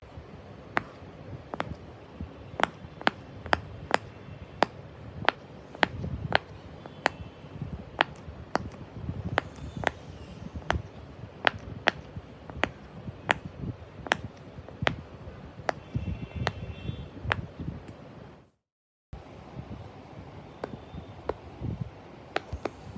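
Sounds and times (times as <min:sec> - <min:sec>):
sharp taps or clicks: 0:11.5 - 0:13.5.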